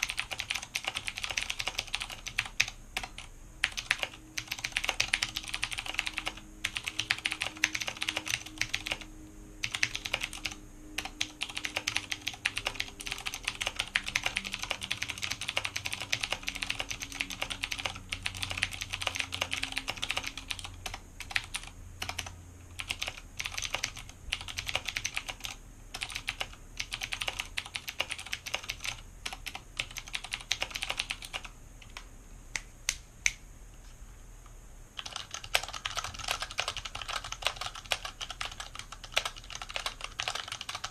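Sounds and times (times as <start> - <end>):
typing on mechanical keyboard: 0.0 - 32.0, 35.0 - 40.9.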